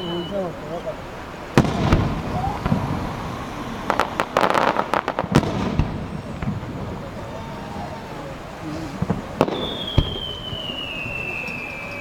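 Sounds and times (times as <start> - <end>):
fireworks crackling: 0.0 - 12.0
fireworks booming: 1.4 - 12.0.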